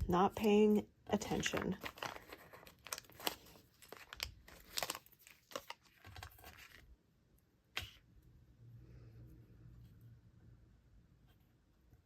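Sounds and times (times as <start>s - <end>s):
plastic sheets crinkling: 0.0s - 6.9s.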